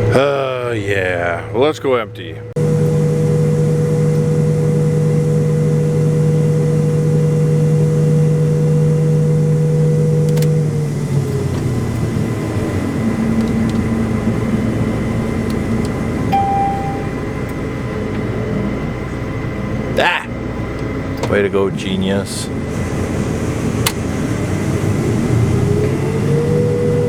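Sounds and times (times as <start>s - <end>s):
combine harvester humming: 2.6s - 27.0s
brief high tone: 16.3s - 17.4s.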